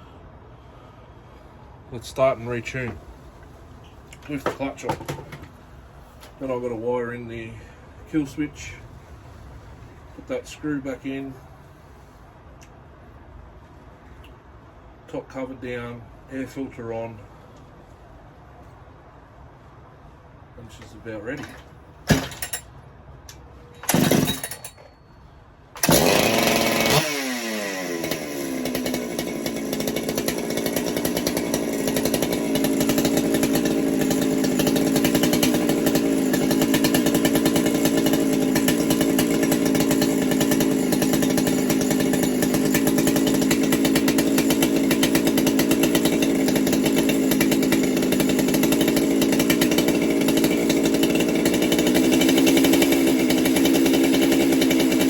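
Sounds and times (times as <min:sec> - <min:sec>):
chainsaw starting and running: 0:04.2 - 0:05.5, 0:23.3 - 0:25.0, 0:25.8 - 0:55.0.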